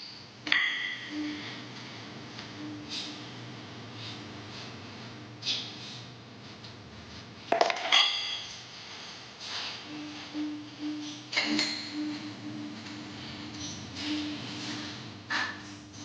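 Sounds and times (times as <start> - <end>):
dishes and utensils clattering: 7.5 - 8.6, 11.2 - 12.0.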